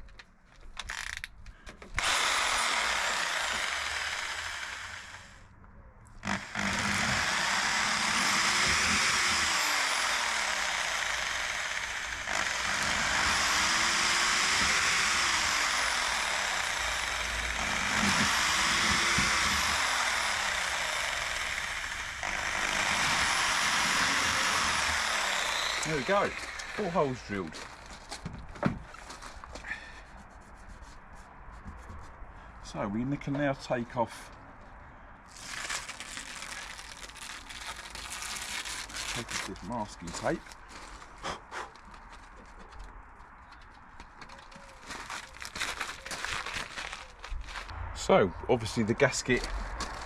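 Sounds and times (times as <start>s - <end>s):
electric drill boring holes: 2.0s - 5.4s, 6.2s - 27.8s, 35.3s - 40.3s.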